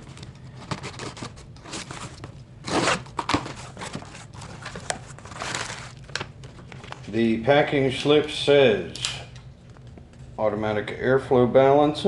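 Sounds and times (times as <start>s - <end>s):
cardboard tearing scrape: 0.7s - 6.0s.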